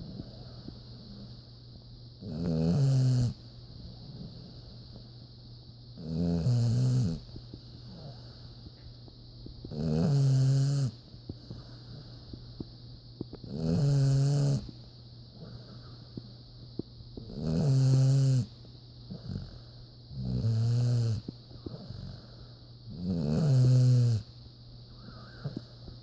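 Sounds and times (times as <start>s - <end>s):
loud low buzzing snores: 0.0s - 1.5s, 2.2s - 5.0s, 6.0s - 8.7s, 9.7s - 12.4s, 13.4s - 14.7s, 17.2s - 24.3s, 24.9s - 25.7s
quiet breathing: 0.0s - 2.2s, 3.5s - 5.7s, 7.0s - 9.8s, 10.8s - 13.5s, 14.5s - 17.4s, 18.4s - 20.4s, 21.2s - 23.0s, 24.2s - 26.0s.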